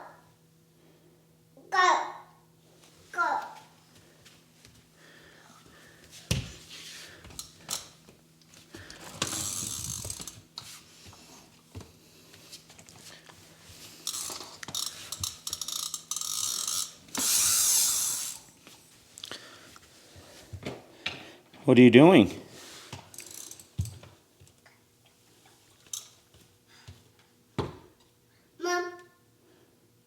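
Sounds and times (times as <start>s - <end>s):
toy car wheels whirring and rattling: 8.9s - 10.4s, 13.9s - 18.5s, 23.1s - 24.0s.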